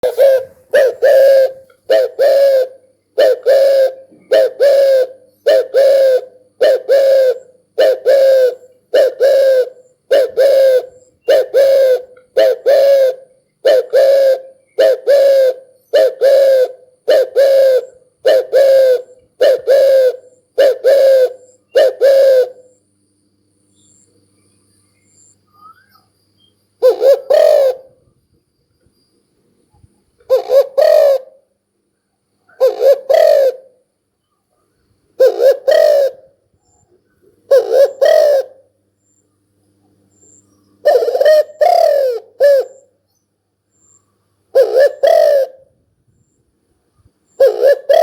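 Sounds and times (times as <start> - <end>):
dove cooing: 0.0 - 22.8, 26.8 - 28.2, 30.2 - 31.5, 32.5 - 33.8, 35.2 - 36.8, 37.4 - 38.8, 40.2 - 43.0, 44.5 - 45.8, 47.3 - 48.0.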